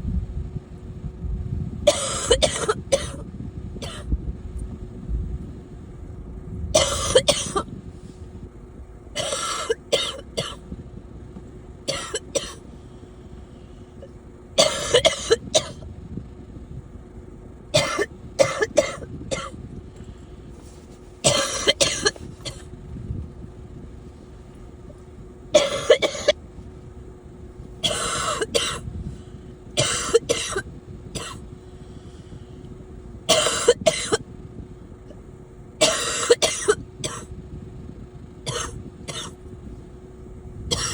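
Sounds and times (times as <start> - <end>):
person coughing harshly: 1.9 - 4.1, 6.8 - 7.7, 9.2 - 10.6, 11.9 - 12.6, 14.6 - 15.8, 17.7 - 19.6, 21.2 - 22.7, 25.6 - 26.4, 27.8 - 28.9, 29.8 - 31.4, 33.3 - 34.2, 35.8 - 37.3, 38.4 - 39.4.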